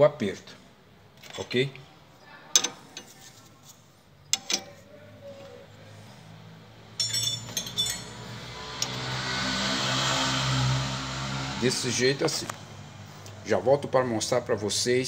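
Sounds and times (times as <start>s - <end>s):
wrench metal clinks: 7.0s - 8.9s.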